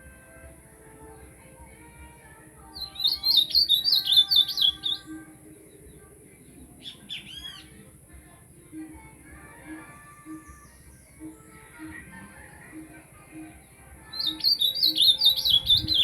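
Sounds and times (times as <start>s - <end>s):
faint background music: 0.0s - 16.0s
bird singing high repeated notes: 2.7s - 6.0s, 6.8s - 7.8s, 14.1s - 16.0s.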